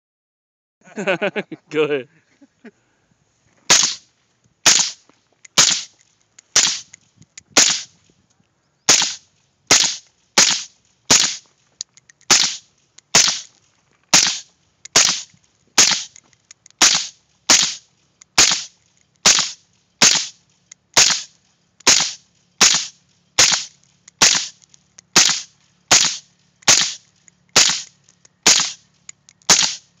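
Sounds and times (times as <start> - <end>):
suppressed rifle shots: 3.7 - 4.0, 4.6 - 5.0, 5.6 - 7.0, 7.6 - 8.0, 8.9 - 11.5, 12.3 - 13.5, 14.1 - 16.2, 16.8 - 17.8, 18.4 - 20.4, 21.0 - 28.8, 29.4 - 30.0.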